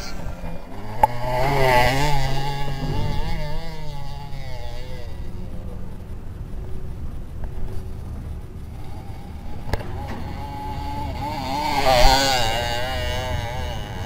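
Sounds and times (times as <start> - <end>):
motorcycle engine revving: 0.0 - 14.0
sharp knocks: 2.7 - 4.0.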